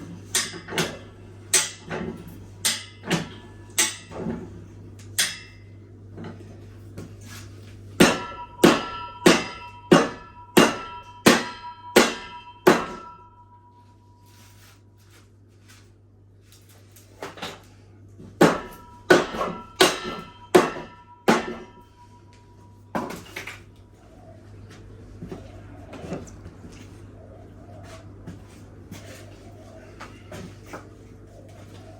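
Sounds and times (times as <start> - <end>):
low hum: 17.9 - 31.9.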